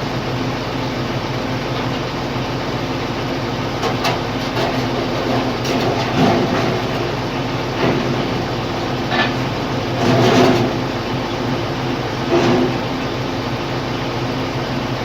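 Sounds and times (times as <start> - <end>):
metallic clanks and scrapes: 3.8 - 7.2, 7.8 - 10.9, 12.2 - 12.8.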